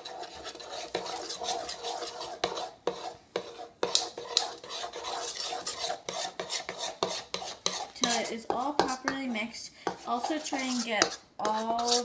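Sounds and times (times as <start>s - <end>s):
spoon scraping thick mixture: 0.0s - 12.0s.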